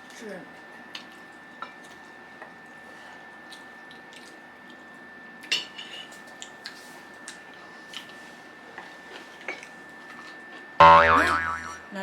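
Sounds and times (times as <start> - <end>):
faint steady high tone: 10.8 - 12.0.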